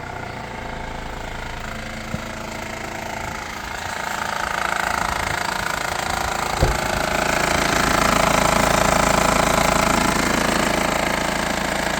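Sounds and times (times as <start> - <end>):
engine idling with clatter: 0.0 - 11.9
thump: 6.5 - 7.0.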